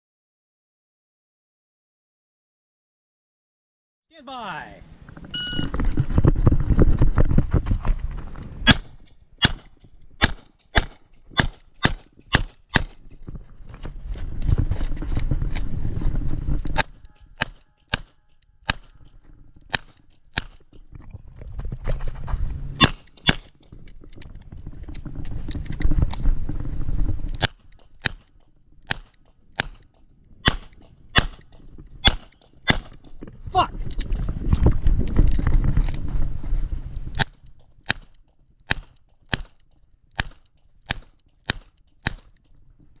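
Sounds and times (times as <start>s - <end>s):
low rumbling noise: 20.8s - 23.2s, 24.0s - 28.1s, 32.8s - 37.9s.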